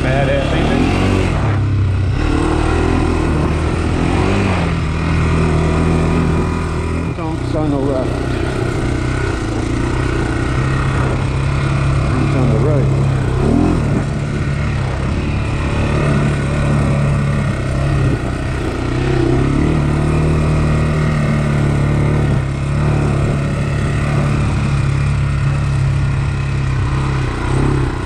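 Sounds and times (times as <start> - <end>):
atv engine running: 0.0 - 28.0.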